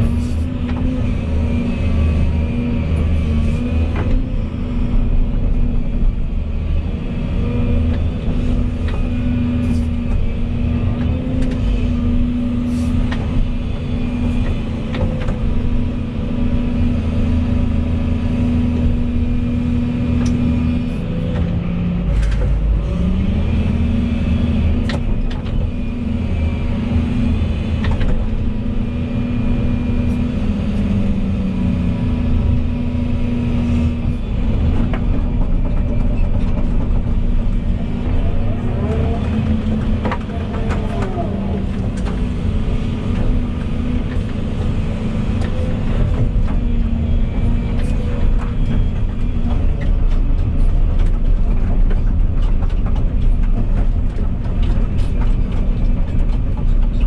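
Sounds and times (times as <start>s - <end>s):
excavator diesel engine running: 0.0s - 57.0s
sharp clicks and knocks: 38.9s - 57.0s.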